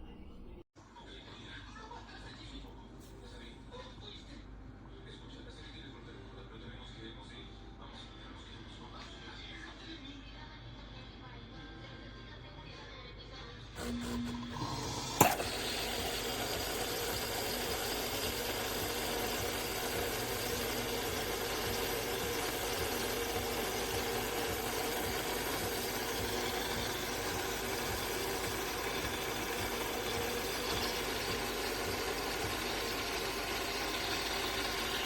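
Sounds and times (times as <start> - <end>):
espresso machine humming: 13.8 - 35.0.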